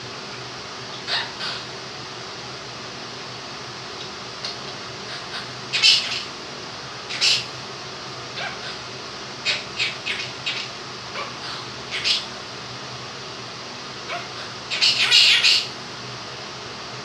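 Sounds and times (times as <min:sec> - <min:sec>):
electric fan hiss: 0:00.0 - 0:17.0
parrot chirping and squawking: 0:00.9 - 0:01.8, 0:04.4 - 0:06.4, 0:07.1 - 0:07.6, 0:08.3 - 0:12.4, 0:14.0 - 0:15.8.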